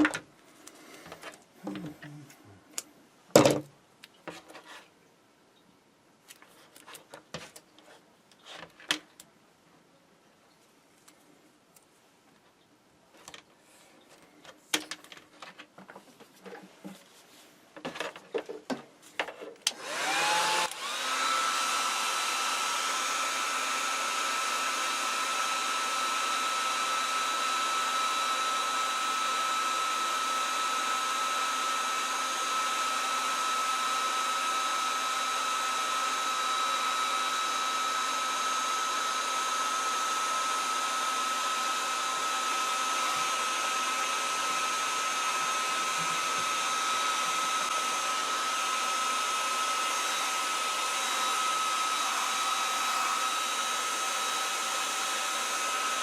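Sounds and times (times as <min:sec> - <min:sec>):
hot-air blower fan whining: 0:19.7 - 0:56.0.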